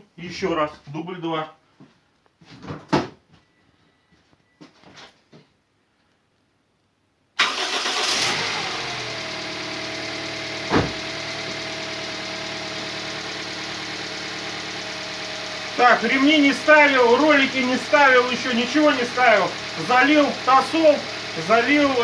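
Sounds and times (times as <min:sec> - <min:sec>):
car engine starting and idling: 0:07.4 - 0:22.0.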